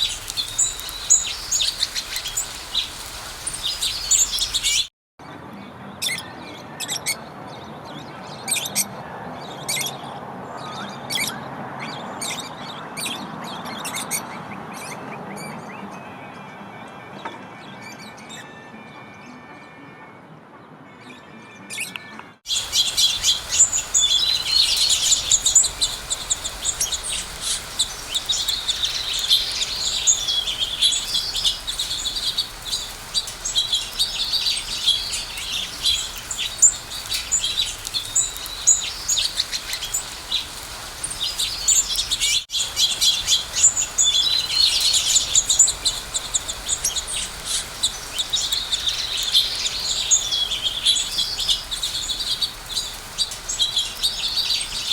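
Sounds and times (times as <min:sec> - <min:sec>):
songbirds chirping: 0:00.0 - 0:04.9, 0:22.5 - 0:54.9.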